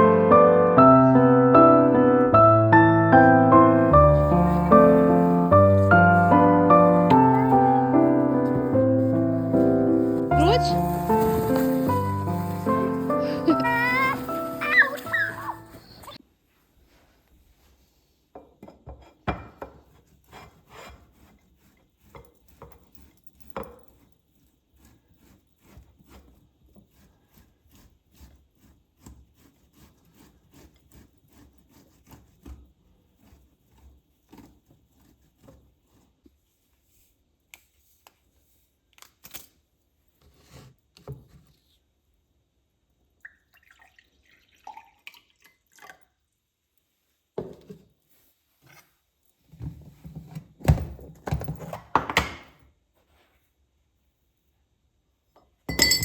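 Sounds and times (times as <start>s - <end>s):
objects being handled: 4.0s - 16.2s.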